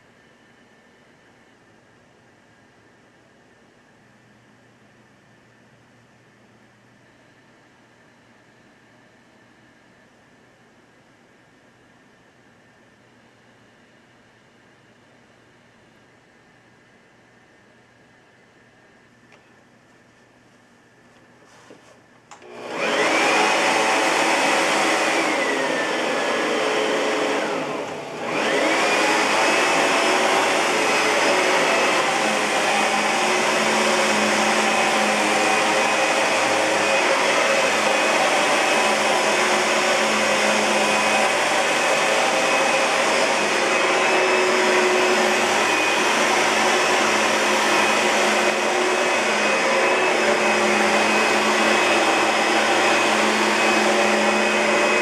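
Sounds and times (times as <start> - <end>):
vacuum cleaner motor whining: 22.3 - 55.0.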